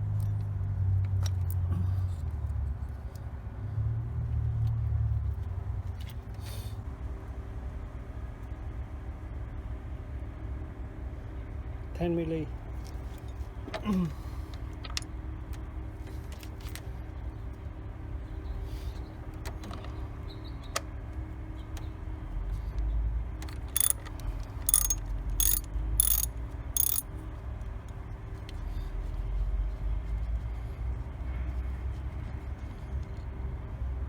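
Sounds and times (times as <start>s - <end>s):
light tool clicks: 23.8s - 24.0s, 24.7s - 27.0s
ratchet wrench clicking: 23.8s - 24.0s, 24.7s - 27.0s.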